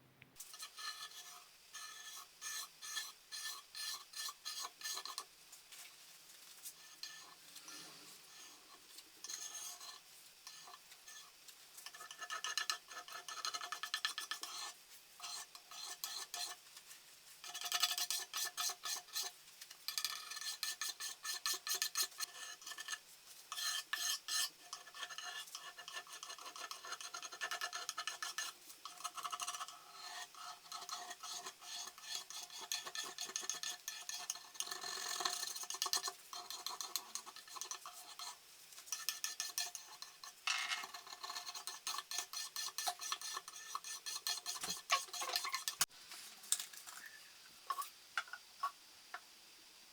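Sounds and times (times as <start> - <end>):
rasping scraping on wood: 40.8 - 45.9.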